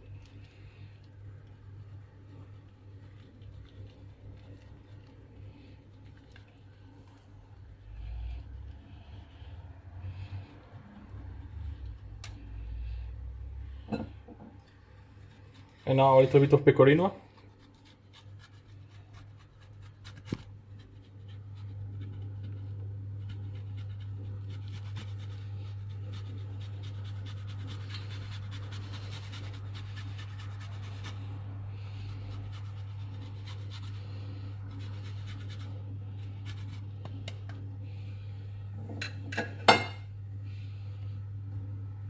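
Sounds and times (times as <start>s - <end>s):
steady low hum: 0.0s - 42.0s
cheese being grated by hand: 14.8s - 37.3s.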